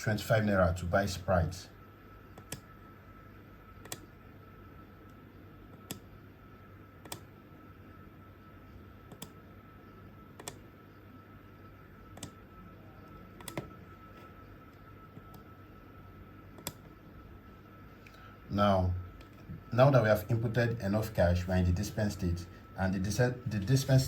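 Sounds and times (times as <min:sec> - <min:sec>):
faint steady tone: 0:00.0 - 0:24.0.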